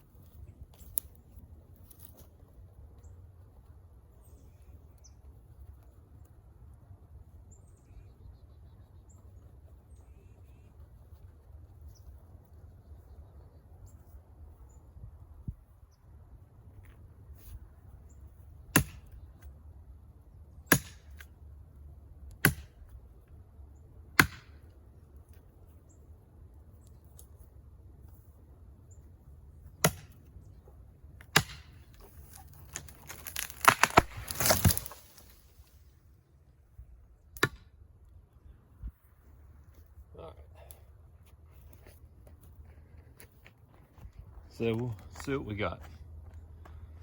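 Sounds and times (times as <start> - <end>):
blade striking wood: 18.7 - 19.1, 20.7 - 21.3, 22.4 - 22.8, 24.2 - 24.6, 29.8 - 30.2, 31.2 - 35.3, 37.4 - 37.7
tree cracking and falling: 31.3 - 35.8.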